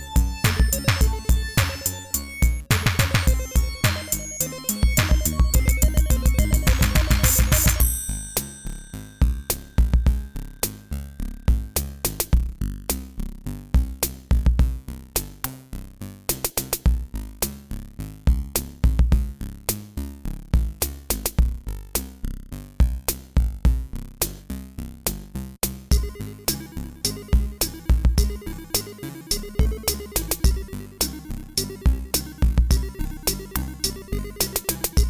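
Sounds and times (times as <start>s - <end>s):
electronic music with drum beat: 0.0s - 8.6s, 9.2s - 10.9s, 11.5s - 12.6s, 13.8s - 15.4s, 25.6s - 35.0s.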